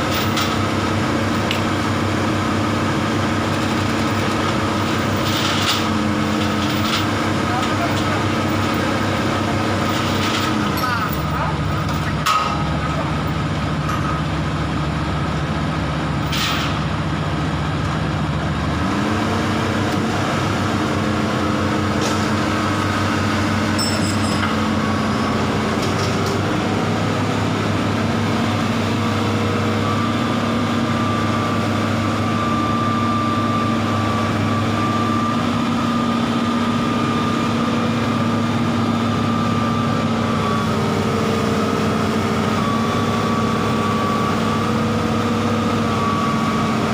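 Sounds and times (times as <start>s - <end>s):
excavator diesel engine: 0.0s - 46.9s.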